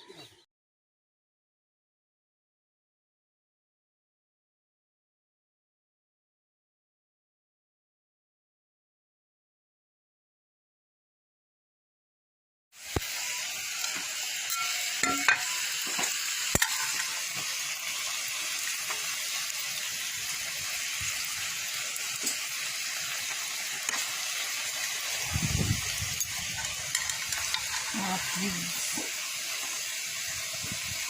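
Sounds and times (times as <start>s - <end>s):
pork sizzling: 12.7s - 31.0s.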